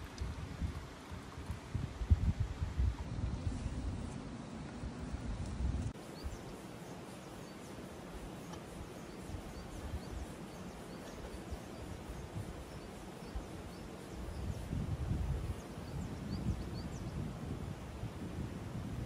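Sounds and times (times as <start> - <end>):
wind buffeting microphone: 0.0 - 6.6, 8.4 - 19.0
steady even hiss: 0.0 - 19.0
faint high ticks: 8.4 - 8.8.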